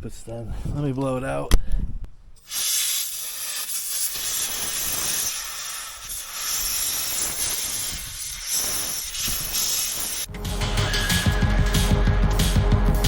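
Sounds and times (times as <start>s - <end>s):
compressed air blow gun hissing: 2.4s - 10.3s.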